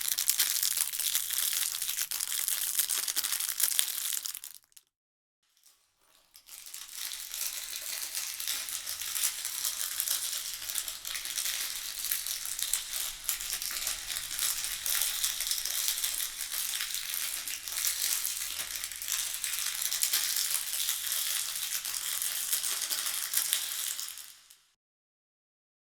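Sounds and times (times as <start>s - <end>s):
plastic candy wrapper crinkling: 0.0s - 4.9s, 6.4s - 24.6s.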